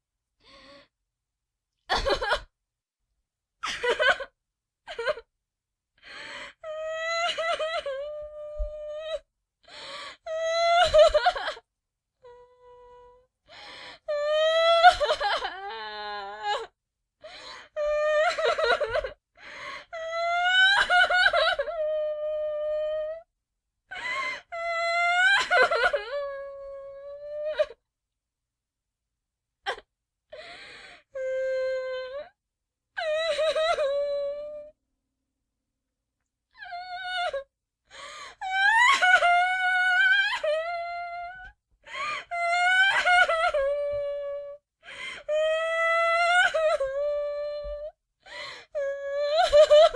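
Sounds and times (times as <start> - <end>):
woman crying and sobbing: 1.9 - 2.5, 3.6 - 5.3, 10.1 - 11.6, 14.1 - 16.7, 17.6 - 19.2, 19.9 - 23.1, 24.0 - 27.8, 38.4 - 49.9
sharp gasping breath: 30.4 - 31.1, 48.2 - 48.7.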